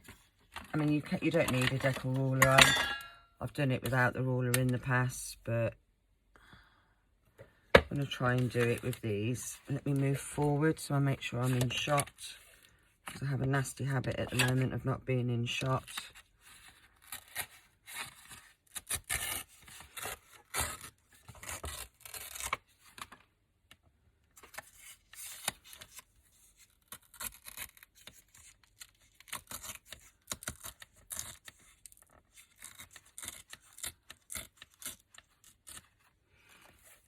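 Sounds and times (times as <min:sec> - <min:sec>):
paper tearing: 0:17.0 - 0:22.7, 0:26.6 - 0:36.0.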